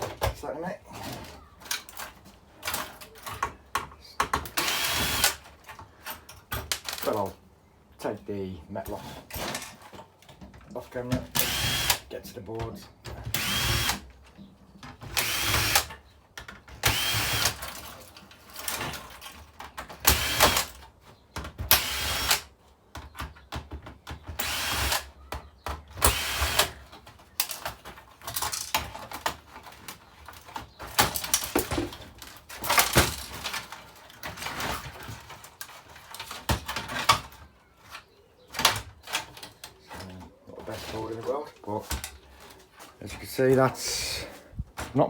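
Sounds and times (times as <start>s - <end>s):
clicks and clatter of parts: 1.0s - 7.3s, 9.2s - 43.6s
cordless drill whining: 4.6s - 5.4s, 11.3s - 12.0s, 13.3s - 14.0s, 15.1s - 15.9s, 16.8s - 17.7s, 20.0s - 20.7s, 21.8s - 22.5s, 24.4s - 25.1s, 26.0s - 26.8s.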